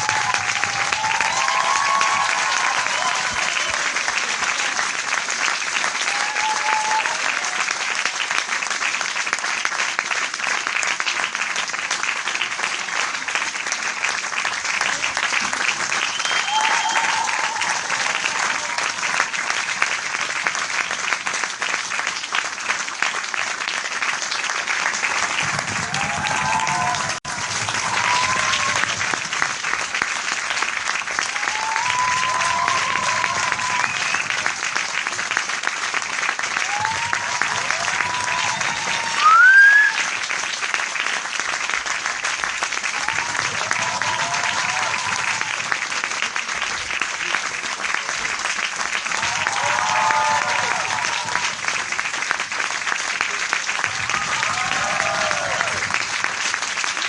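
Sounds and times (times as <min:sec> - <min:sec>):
crowd applauding: 0:00.0 - 0:57.0
loud rising call: 0:38.3 - 0:40.0.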